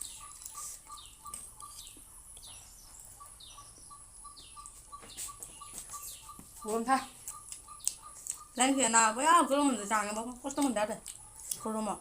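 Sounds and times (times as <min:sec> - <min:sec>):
bird chirps sliding down: 0:00.0 - 0:08.6.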